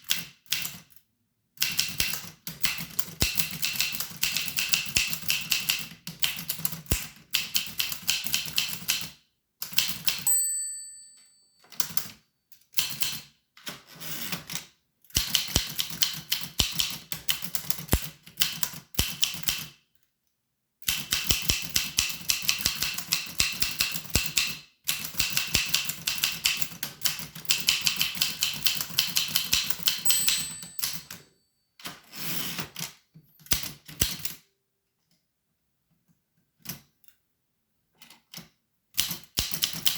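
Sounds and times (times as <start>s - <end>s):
typewriter margin bell: 9.8s - 13.1s, 27.8s - 32.6s
typewriter key strikes: 20.9s - 31.2s.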